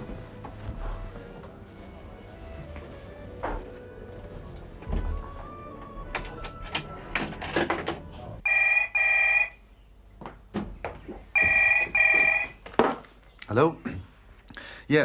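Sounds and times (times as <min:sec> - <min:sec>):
telephone ringing: 0:08.4 - 0:09.6, 0:11.4 - 0:12.6.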